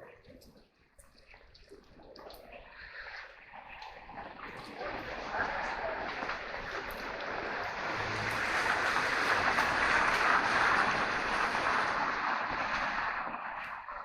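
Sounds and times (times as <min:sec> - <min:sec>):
car tyres hissing on wet road: 0:05.3 - 0:13.6.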